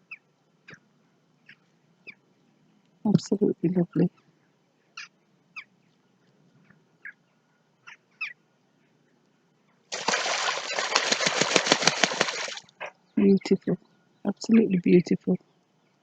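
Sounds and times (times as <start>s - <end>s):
faint bird calls: 3.9s - 9.8s
waterbird wings flapping: 9.9s - 12.8s.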